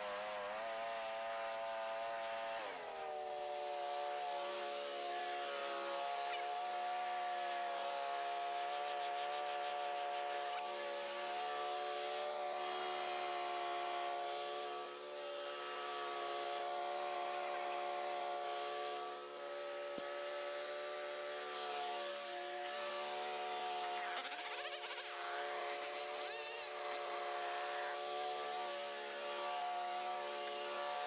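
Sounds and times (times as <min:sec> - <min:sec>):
bandsaw mill cutting log: 0:09.7 - 0:31.0.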